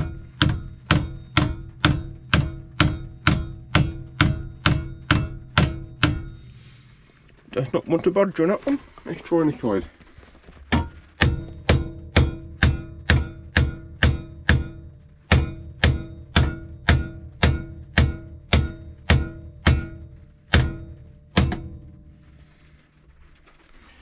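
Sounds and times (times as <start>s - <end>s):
hammer tapping on metal: 0.0s - 7.2s, 10.7s - 22.7s.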